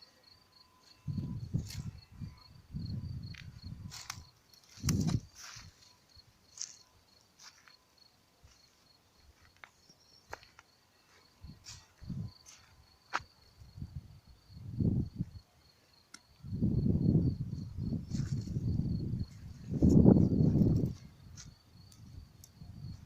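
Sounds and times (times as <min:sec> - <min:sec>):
cricket chirping: 0:00.0 - 0:23.0.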